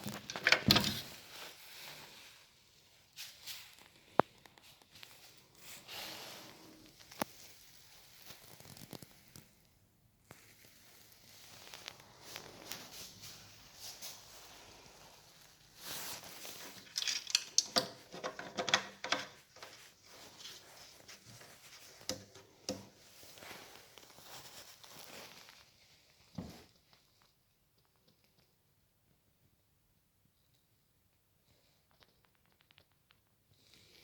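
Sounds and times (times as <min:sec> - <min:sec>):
faint rustling: 0:00.0 - 0:18.1
handling rustling: 0:10.3 - 0:26.2.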